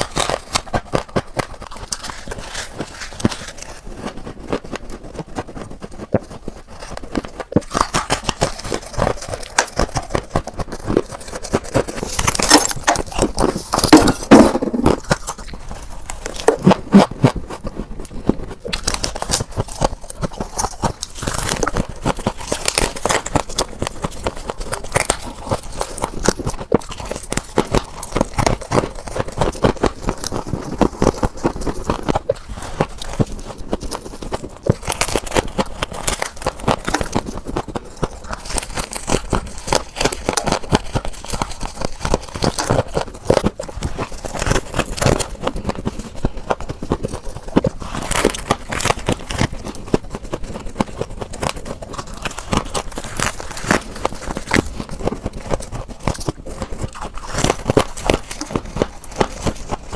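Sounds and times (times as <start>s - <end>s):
chewing crunchy frost: 0.0s - 59.9s.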